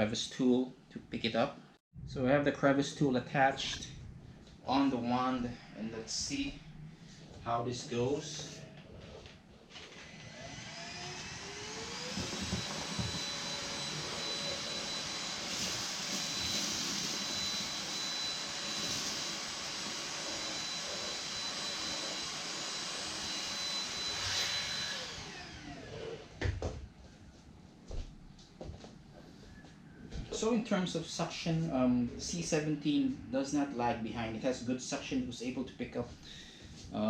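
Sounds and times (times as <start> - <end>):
vacuum cleaner motor whining: 7.5 - 26.6.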